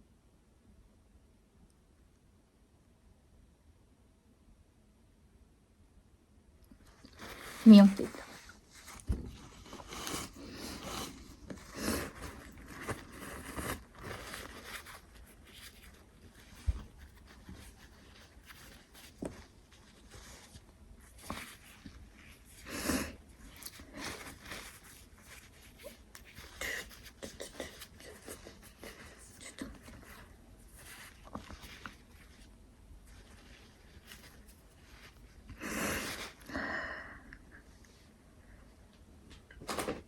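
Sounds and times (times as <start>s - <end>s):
soft nose sniffs: 9.5s - 15.0s, 35.0s - 36.5s.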